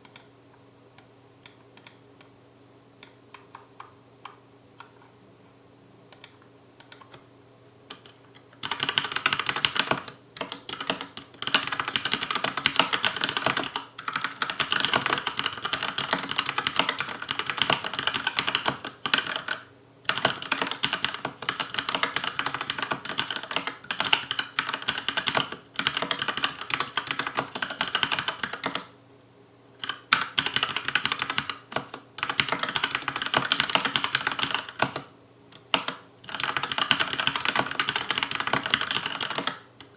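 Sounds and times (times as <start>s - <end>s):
mechanical keyboard typing: 7.9s - 28.9s, 29.8s - 39.9s.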